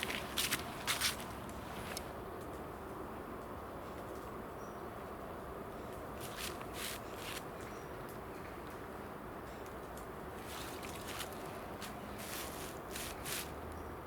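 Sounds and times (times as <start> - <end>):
short dry rustles: 6.2 - 7.4, 10.4 - 13.6.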